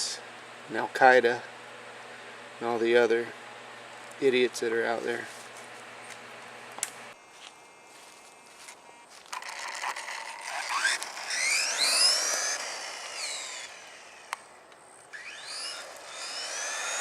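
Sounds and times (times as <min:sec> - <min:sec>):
rc car motor whining: 0:06.6 - 0:17.0.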